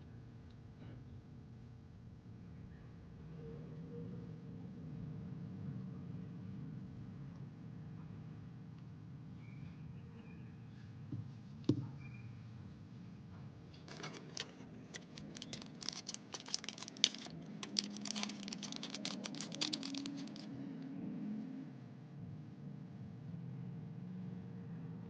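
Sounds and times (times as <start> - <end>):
plastic packaging crinkling: 13.9 - 20.6.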